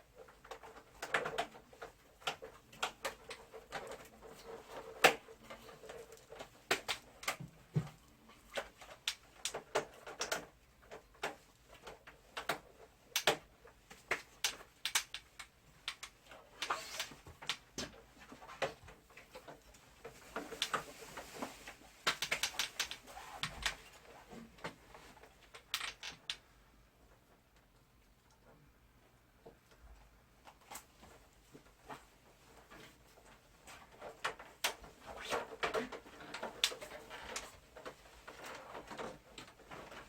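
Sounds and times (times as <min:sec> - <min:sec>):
plastic parts clicking and tapping: 0:00.1 - 0:26.5, 0:31.8 - 0:40.0.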